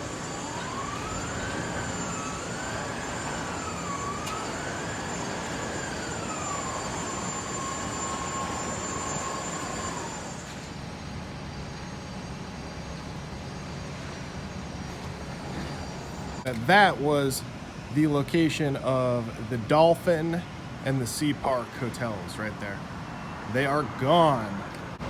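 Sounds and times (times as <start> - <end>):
traffic noise: 0.0 - 11.0, 14.2 - 25.0
emergency siren wailing: 0.0 - 11.6.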